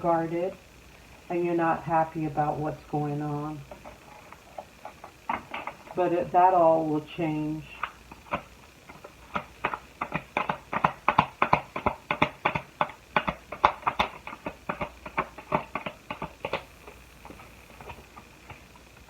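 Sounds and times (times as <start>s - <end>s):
cards clicking and slapping: 7.8s - 18.6s.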